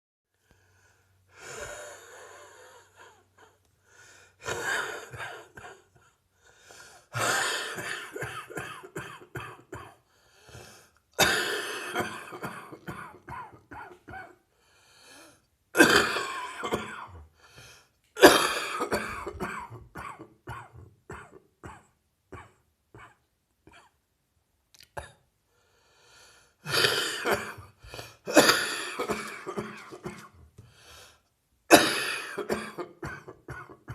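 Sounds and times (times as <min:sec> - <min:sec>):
person coughing hard: 0:04.4 - 0:05.9, 0:07.2 - 0:10.0, 0:11.2 - 0:14.4, 0:15.8 - 0:17.3, 0:18.2 - 0:24.0, 0:26.6 - 0:30.4, 0:31.7 - 0:33.9.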